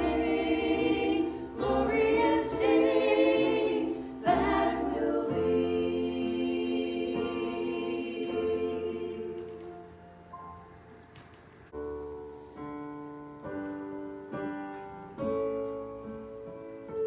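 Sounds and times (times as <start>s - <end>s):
group singing worship song: 0.0s - 9.9s.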